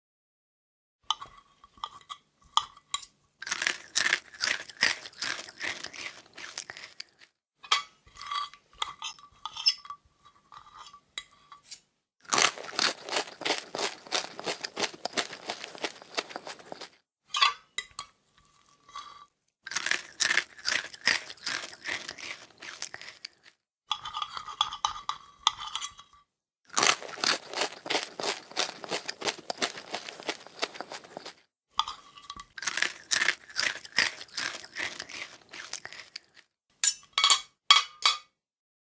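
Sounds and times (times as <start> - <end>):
crunchy food being chewed: 3.4 - 7.4, 12.2 - 17.0, 19.7 - 24.6, 26.7 - 36.5.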